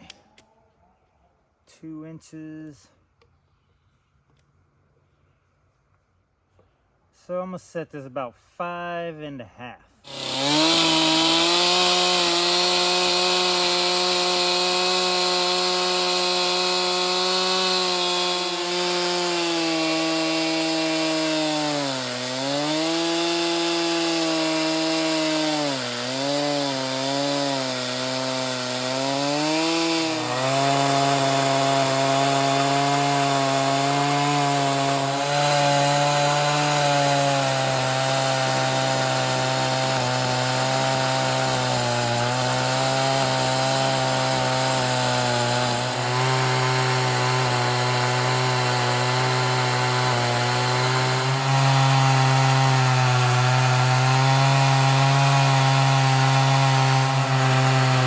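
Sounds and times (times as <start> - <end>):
chainsaw ripping through log: 10.0 - 58.0.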